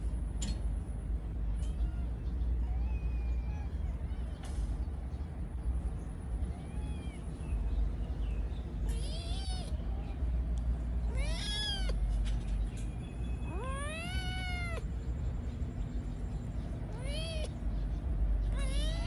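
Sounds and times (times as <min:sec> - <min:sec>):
steady low rumble: 0:00.0 - 0:19.0
cat meowing: 0:08.8 - 0:10.2, 0:11.0 - 0:12.1, 0:13.4 - 0:14.9, 0:16.9 - 0:17.6, 0:18.4 - 0:19.0.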